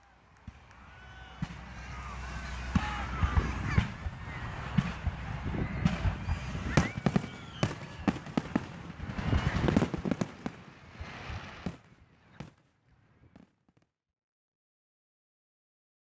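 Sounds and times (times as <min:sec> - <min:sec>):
fireworks bangs and crackles: 0:00.0 - 0:13.9
low rumble: 0:01.4 - 0:10.0.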